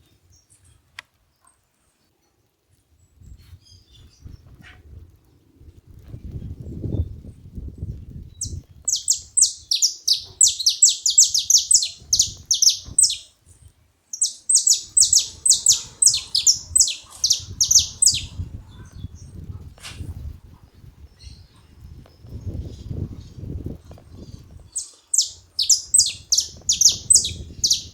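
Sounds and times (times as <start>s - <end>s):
finches chirping: 8.4s - 13.3s, 14.1s - 19.2s, 24.2s - 27.9s.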